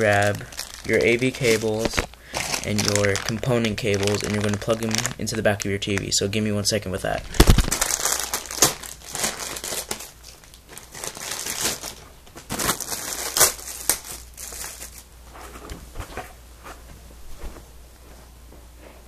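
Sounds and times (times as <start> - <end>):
cables crinkling and clicking: 0.0 - 6.4, 7.1 - 15.1.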